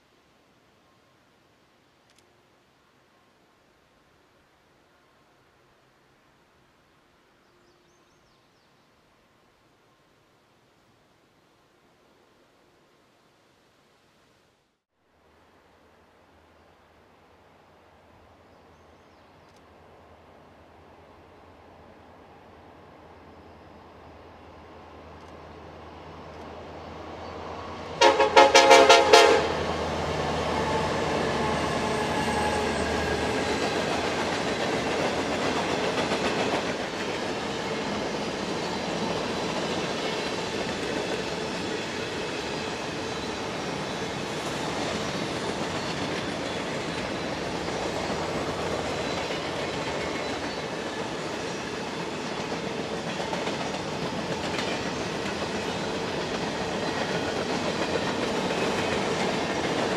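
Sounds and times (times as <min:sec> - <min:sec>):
train rumbling and clattering past: 0:19.9 - 0:59.9
locomotive air horn blast: 0:28.0 - 0:29.7.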